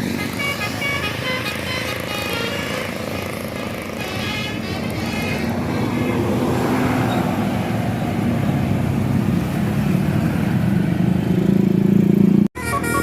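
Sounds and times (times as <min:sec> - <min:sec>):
diesel bus engine running: 0:00.0 - 0:06.5
road noise: 0:00.0 - 0:13.0.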